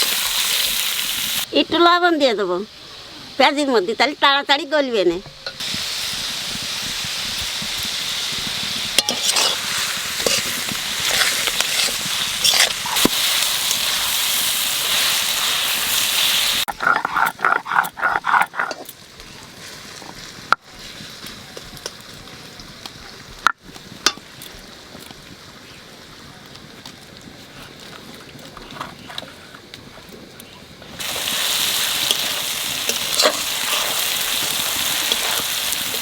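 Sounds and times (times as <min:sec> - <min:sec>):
onions sizzling in oil: 0:00.0 - 0:29.2, 0:30.3 - 0:36.0
stirring scrapes in pan: 0:08.3 - 0:14.2, 0:31.0 - 0:36.0.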